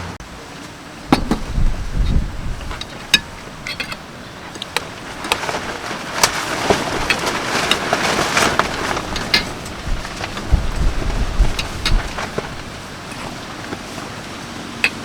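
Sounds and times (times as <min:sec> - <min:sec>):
rain: 0:00.0 - 0:15.0
strong wind gusting: 0:01.0 - 0:04.2, 0:04.9 - 0:13.5.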